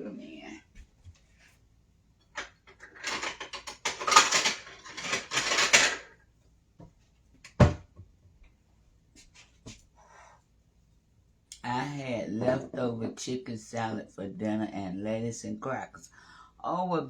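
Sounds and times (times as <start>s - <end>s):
kitchenware clattering: 2.3s - 6.2s.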